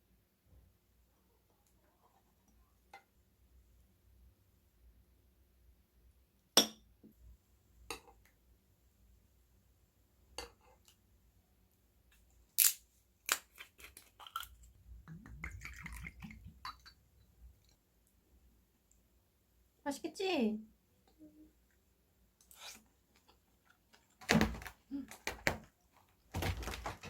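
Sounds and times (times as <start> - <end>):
rustling: 22.6 - 27.0.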